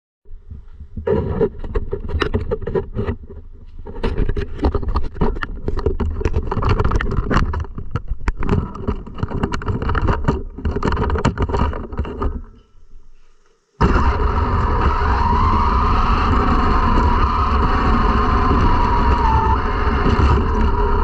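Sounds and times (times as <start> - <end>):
radio-controlled car driving: 13.8 - 21.0.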